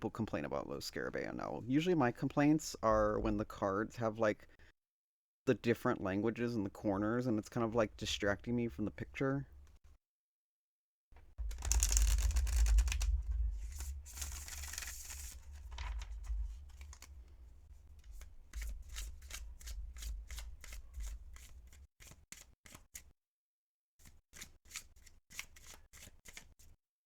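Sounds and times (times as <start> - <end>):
cards rustling while shuffled: 11.4 - 22.8, 24.0 - 26.7.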